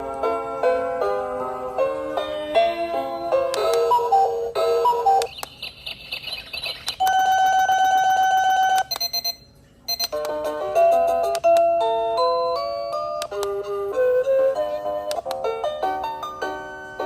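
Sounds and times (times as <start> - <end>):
alarm clock ringtones: 4.8 - 10.2.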